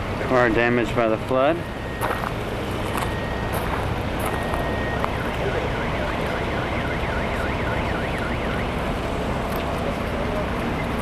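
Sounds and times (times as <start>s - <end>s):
traffic noise: 0.0s - 11.0s
wind: 0.0s - 11.0s
siren yelping: 4.3s - 9.2s.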